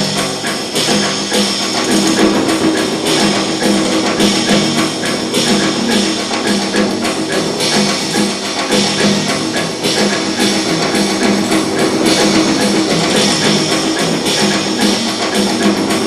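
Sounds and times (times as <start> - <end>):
instrumental dance music: 0.0 - 16.0.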